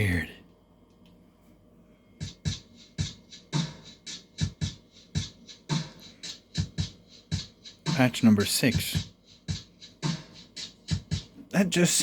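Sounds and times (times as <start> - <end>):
dance drum beat: 2.2 - 11.3.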